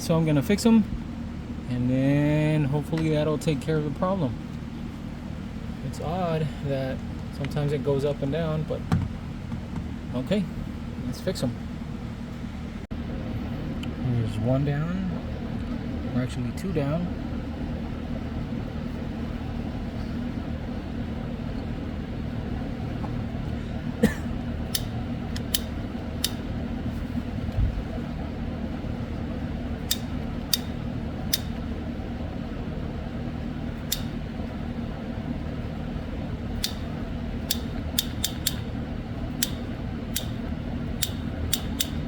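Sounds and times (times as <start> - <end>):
steady low hum: 0.0 - 42.0
hand tool clicking: 33.9 - 34.1, 36.6 - 36.9, 37.5 - 38.6, 39.4 - 40.4, 41.0 - 42.0.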